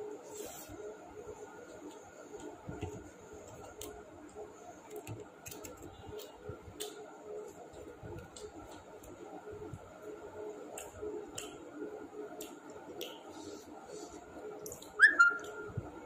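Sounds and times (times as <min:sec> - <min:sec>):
soft mouth clicks and smacks: 0:10.7 - 0:11.6, 0:12.3 - 0:13.8, 0:14.6 - 0:15.6.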